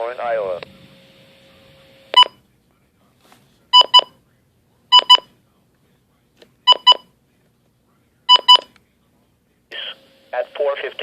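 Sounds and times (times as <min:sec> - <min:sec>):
synthesized voice warning message: 0:09.7 - 0:11.0.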